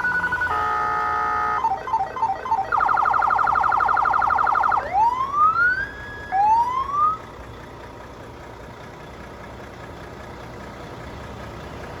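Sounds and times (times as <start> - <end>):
police siren wail: 0.0 - 7.3.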